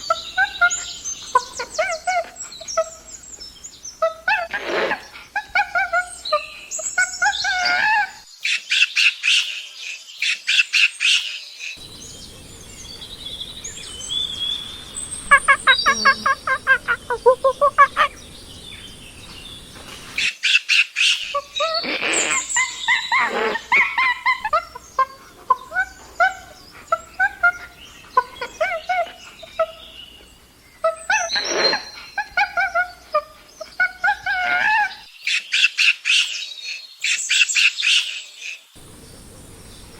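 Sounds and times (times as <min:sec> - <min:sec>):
chimpanzee shrill calls and screams: 0:00.0 - 0:03.2, 0:04.0 - 0:09.5, 0:15.2 - 0:18.2, 0:20.2 - 0:29.9, 0:30.8 - 0:36.4
chimpanzee hoots: 0:15.2 - 0:18.2, 0:21.3 - 0:29.9.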